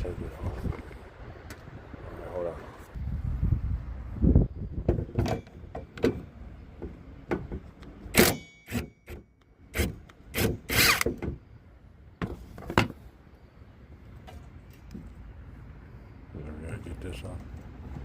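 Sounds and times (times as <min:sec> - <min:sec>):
metal knocks and clanks: 0:04.9 - 0:09.2.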